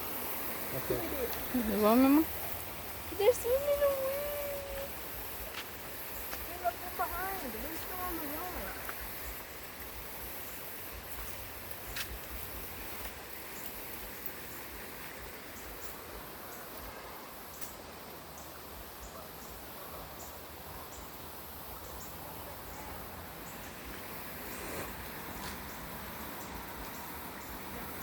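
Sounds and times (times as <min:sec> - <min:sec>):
rushing water hiss: 0:00.0 - 0:28.0.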